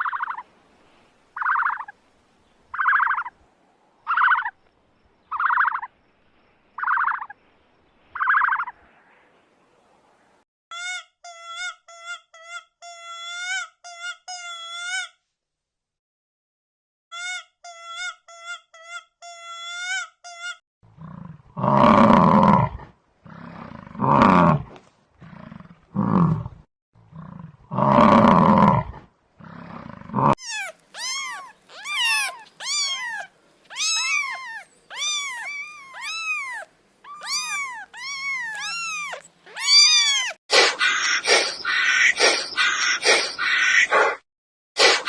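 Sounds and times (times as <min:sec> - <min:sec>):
rough loud animal roars: 0:20.9 - 0:30.4
short high animal calls: 0:30.4 - 0:40.4.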